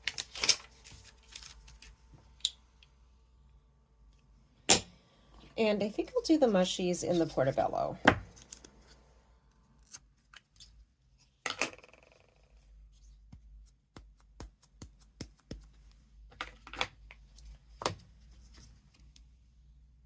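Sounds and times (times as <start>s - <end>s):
paper rustling: 0.0s - 2.0s.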